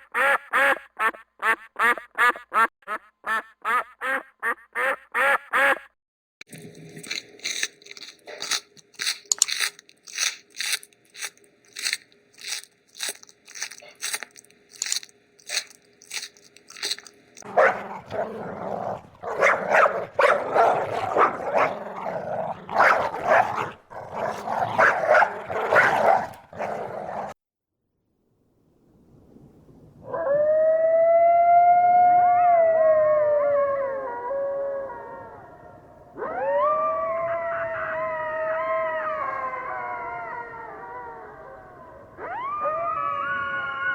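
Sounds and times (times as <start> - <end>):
dogs barking: 16.8 - 27.0.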